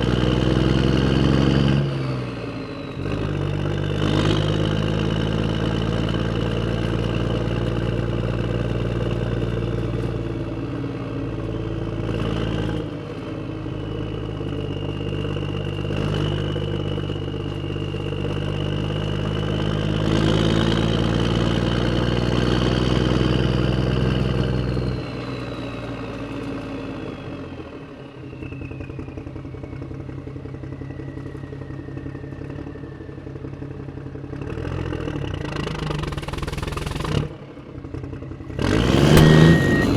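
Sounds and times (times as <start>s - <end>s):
heavy vehicle engine drone: 0.0s - 39.9s
high whine sliding down: 38.5s - 39.9s.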